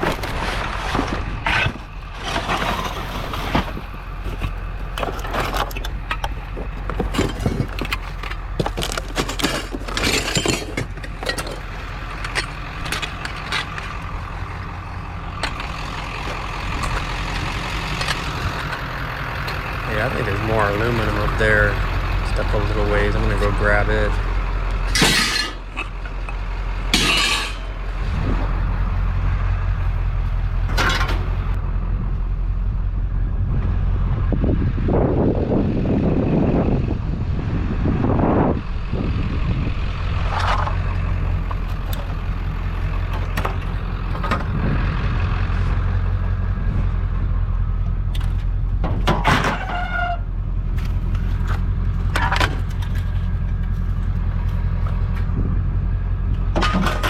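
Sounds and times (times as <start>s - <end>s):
scrap metal clattering: 0.0s - 14.3s, 23.3s - 26.3s, 26.9s - 27.8s
vehicle engine idling: 1.2s - 57.0s.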